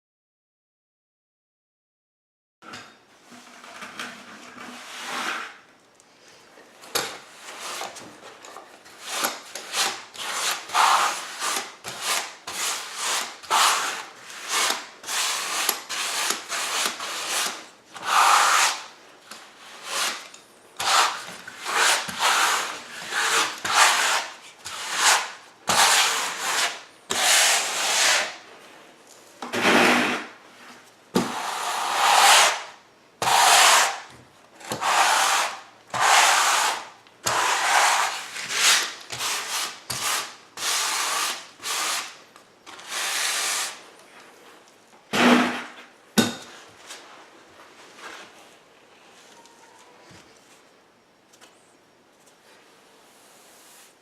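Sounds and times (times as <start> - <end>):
trowel scraping mortar: 7.0 - 8.0, 8.9 - 28.4, 29.5 - 30.4, 31.2 - 34.0, 34.6 - 43.8.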